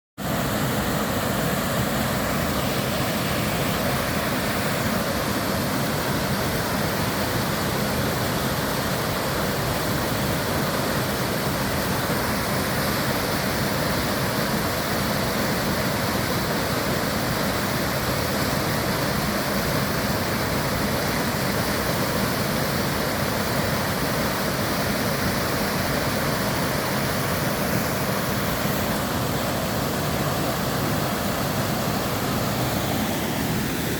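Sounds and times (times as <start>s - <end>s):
waterfall rushing: 0.2s - 33.9s.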